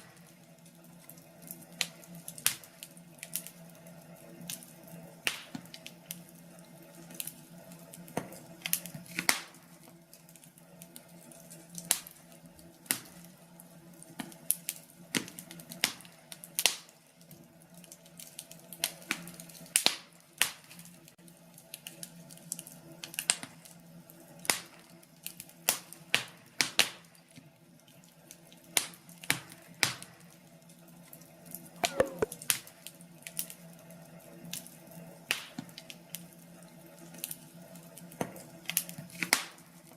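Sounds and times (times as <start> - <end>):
wood fire crackling: 0.1 - 23.8.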